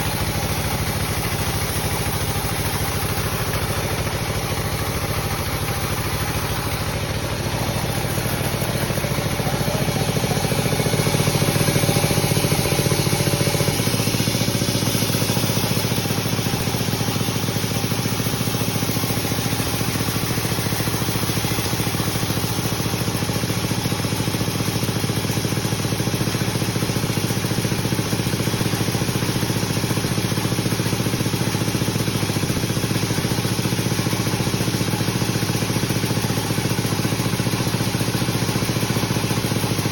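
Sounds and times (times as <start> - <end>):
sawmill machinery humming: 0.0 - 31.4.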